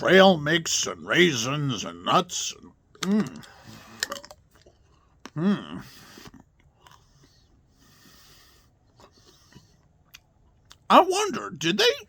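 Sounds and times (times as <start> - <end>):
person chewing: 2.6 - 10.9
wet mouth clicks: 2.9 - 5.4
soft breaths: 3.4 - 10.5.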